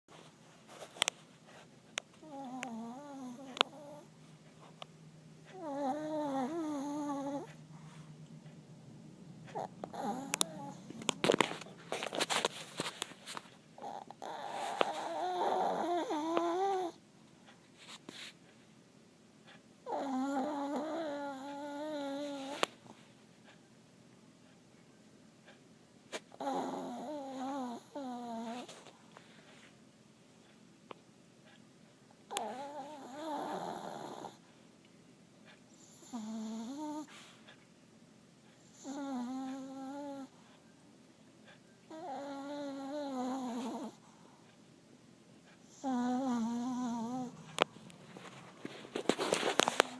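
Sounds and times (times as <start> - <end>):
small dog snoring: 2.2 - 4.1, 5.4 - 8.1, 9.5 - 11.6, 13.8 - 17.0, 19.5 - 22.8, 26.1 - 28.9, 32.3 - 34.5, 35.4 - 37.6, 38.6 - 40.6, 41.5 - 44.5, 45.6 - 49.9.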